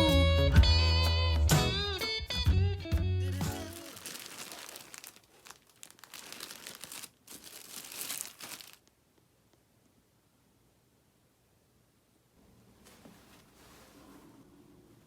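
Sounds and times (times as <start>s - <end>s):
crinkly material rustling: 3.3s - 9.0s, 12.8s - 14.2s.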